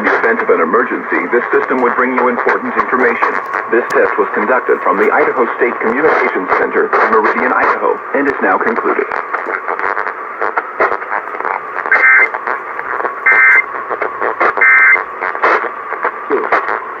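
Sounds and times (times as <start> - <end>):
radio hiss and crackle: 0.0 - 17.0
two-tone digital data bursts: 11.2 - 15.1.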